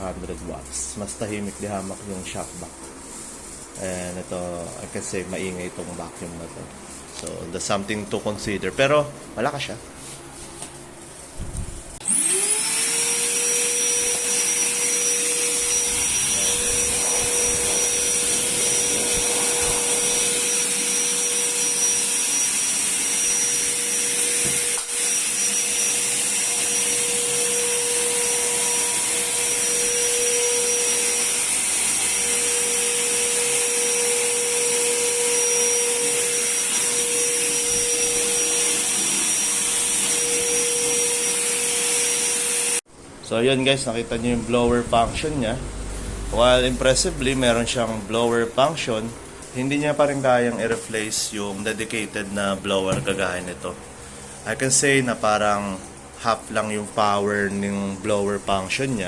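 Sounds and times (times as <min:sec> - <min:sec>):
vacuum cleaner motor blowing air: 0:11.3 - 0:42.9.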